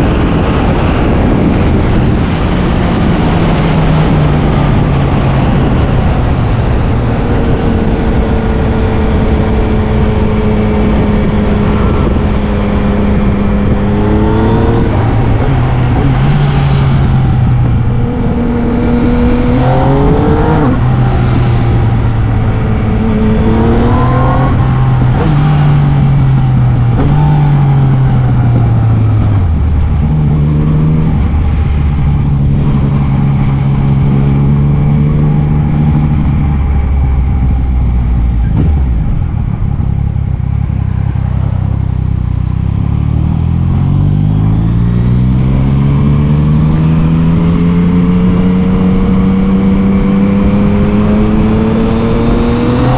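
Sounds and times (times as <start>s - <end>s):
motorcycle engine revving: 0.0s - 52.9s.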